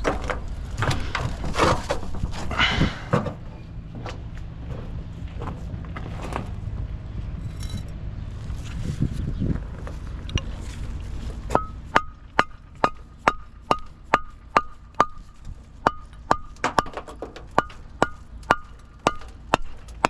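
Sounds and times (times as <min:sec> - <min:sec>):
low rumble: 0:00.0 - 0:20.0
hammer blows with metallic ring: 0:11.6 - 0:16.9.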